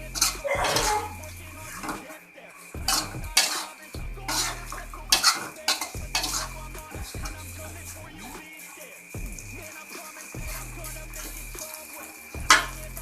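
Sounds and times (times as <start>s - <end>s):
light sizzle: 0.0s - 13.0s
metal utensil scraping a pan: 0.2s - 1.2s, 2.9s - 6.5s.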